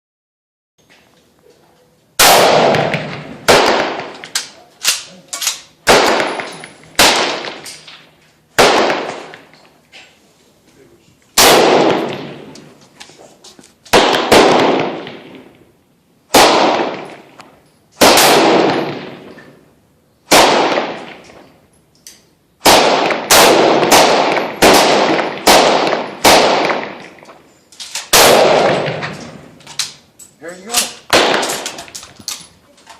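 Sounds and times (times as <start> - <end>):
gunshots with echoing tail: 2.2 - 4.4, 5.8 - 8.0, 8.6 - 9.5, 11.4 - 12.6, 13.9 - 15.6, 16.3 - 17.4, 18.0 - 19.3, 20.3 - 21.4, 22.6 - 27.3, 28.1 - 29.5, 31.1 - 31.9.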